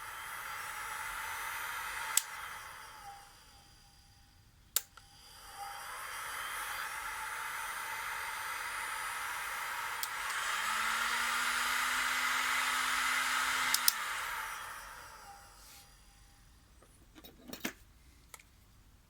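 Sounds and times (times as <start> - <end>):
heat gun fan blowing air: 0.0 - 3.6, 4.8 - 16.3
low steady hum: 0.0 - 19.0
switch clicks: 13.7 - 14.0.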